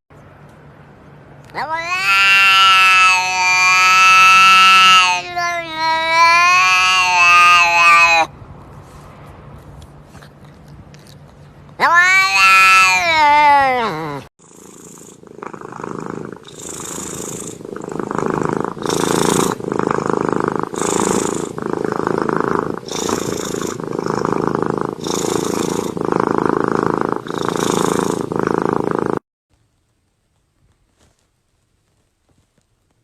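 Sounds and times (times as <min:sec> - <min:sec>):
cat meowing: 0:01.5 - 0:08.3, 0:11.8 - 0:14.3
cat purring: 0:14.4 - 0:29.2.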